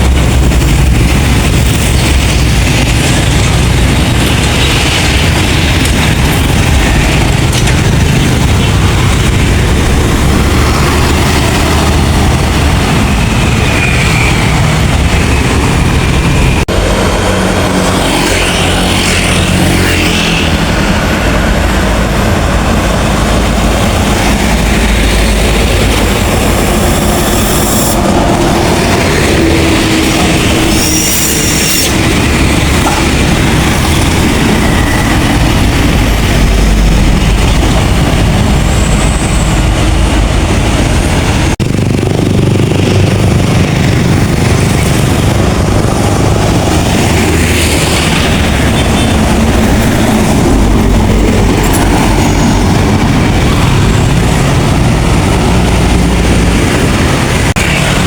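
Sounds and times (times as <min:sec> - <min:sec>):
diesel bus engine rumble: 0:00.0 - 0:13.7, 0:31.9 - 0:58.0
road noise: 0:00.0 - 0:58.0.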